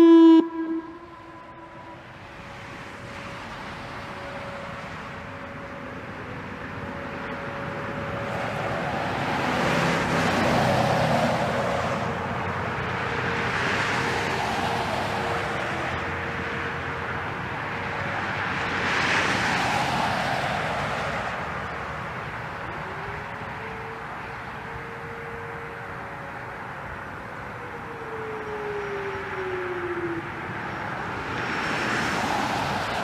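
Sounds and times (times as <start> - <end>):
faint steady tone: 0.0 - 10.2
road traffic passing: 0.0 - 33.0.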